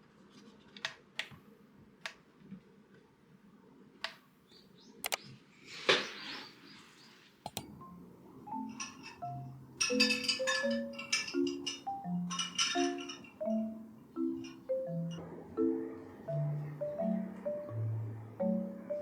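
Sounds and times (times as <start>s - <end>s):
sharp clicks: 5.0s - 5.3s, 7.4s - 7.8s
music with bell-like mallet notes: 7.7s - 19.0s.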